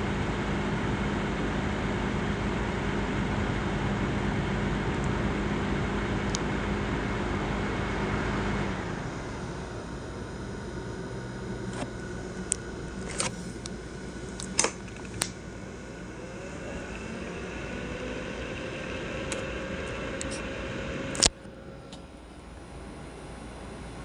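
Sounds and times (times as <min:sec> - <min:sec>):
laptop fan whirring: 0:00.0 - 0:24.0
sharp clicks: 0:11.7 - 0:15.4.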